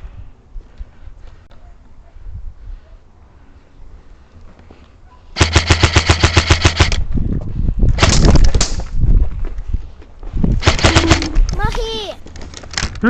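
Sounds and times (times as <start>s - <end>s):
airsoft rifle automatic fire: 5.4s - 7.0s, 10.6s - 11.3s.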